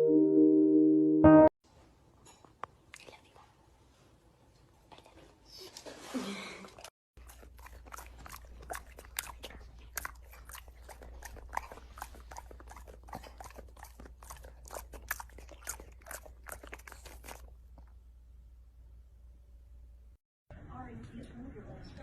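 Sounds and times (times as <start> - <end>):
dog chewing crunchy food: 6.8 - 18.0.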